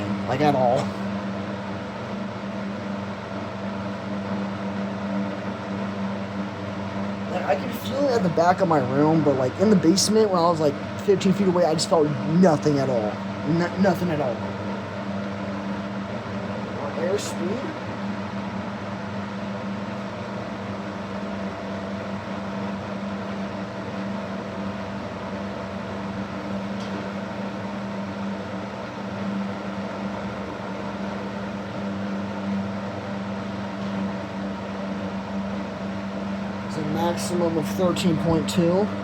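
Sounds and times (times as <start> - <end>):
box fan running: 0.0 - 39.0.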